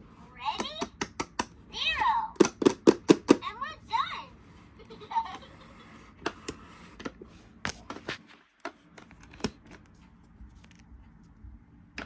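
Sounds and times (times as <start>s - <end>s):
plastic toys clicking and tapping: 0.5s - 1.6s, 2.3s - 3.4s.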